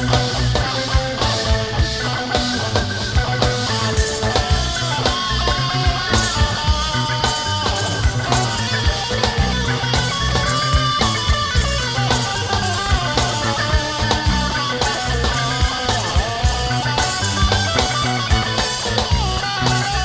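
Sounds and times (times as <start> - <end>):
drums and bass: 0.0 - 20.0
lead guitar melody: 0.0 - 20.0.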